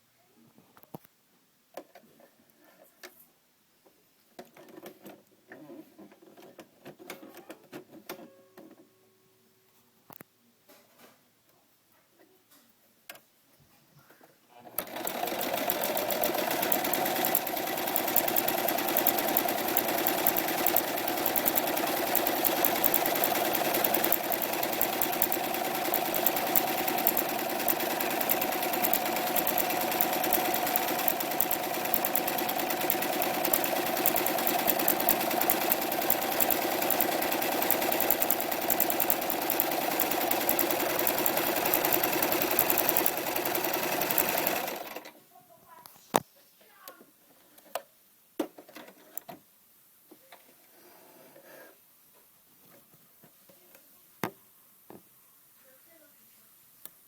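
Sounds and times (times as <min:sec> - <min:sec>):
electric sewing machine stitching: 0:14.6 - 0:45.1.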